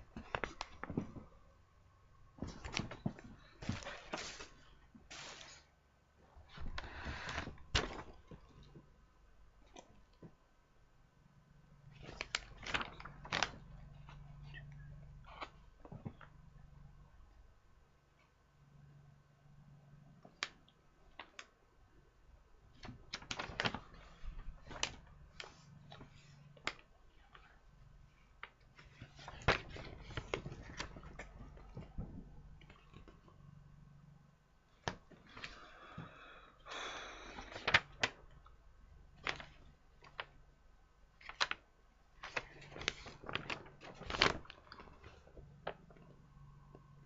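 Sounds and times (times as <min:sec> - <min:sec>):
packaging rustling: 0:42.2 - 0:45.9.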